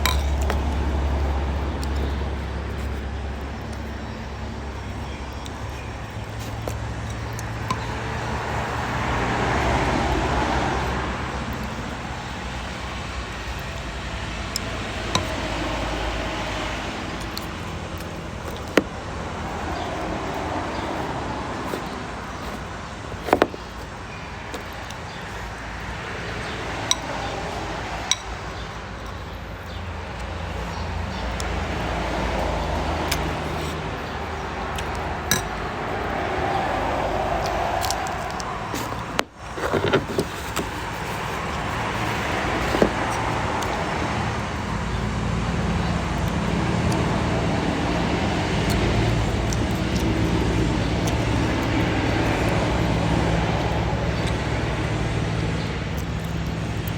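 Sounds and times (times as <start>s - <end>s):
glass or crockery clinking: 0.0s - 0.8s
road traffic passing: 0.0s - 56.9s.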